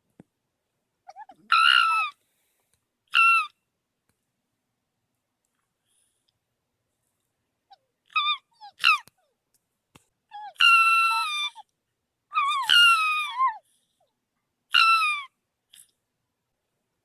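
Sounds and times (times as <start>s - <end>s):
fox yelping and crying: 1.1s - 2.2s, 3.1s - 3.6s, 7.7s - 9.3s, 10.3s - 11.7s, 12.3s - 13.8s, 14.7s - 15.9s.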